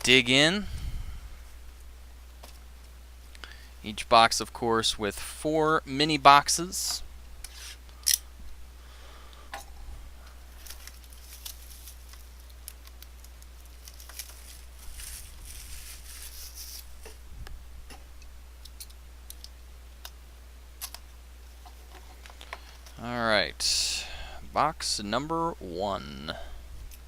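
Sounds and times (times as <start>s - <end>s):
steady low hum: 0.0s - 27.0s
wrapper and cardboard rustling: 10.5s - 17.2s.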